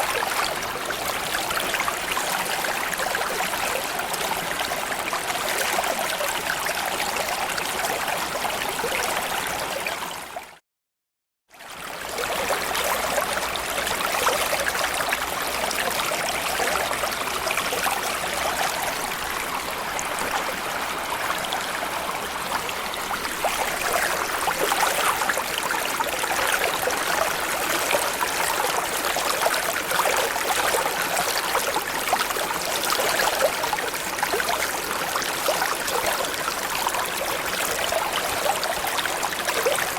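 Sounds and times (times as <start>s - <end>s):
stream rushing over stones: 12.1s - 39.9s.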